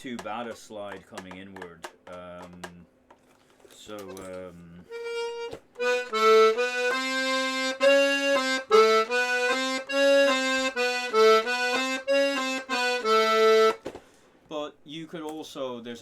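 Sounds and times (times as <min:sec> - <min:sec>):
button accordion playing quick tune: 0:04.9 - 0:13.9.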